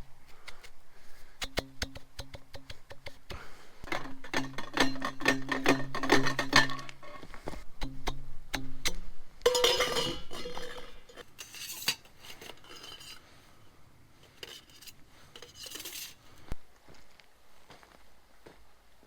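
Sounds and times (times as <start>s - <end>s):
metal cookware clattering: 3.9s - 7.2s, 9.5s - 13.2s, 14.2s - 16.2s.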